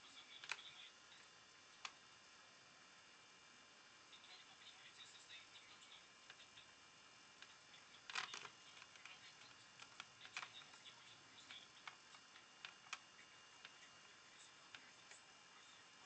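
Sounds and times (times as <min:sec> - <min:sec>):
faint irregular clicks and taps: 0:07.4 - 0:16.0.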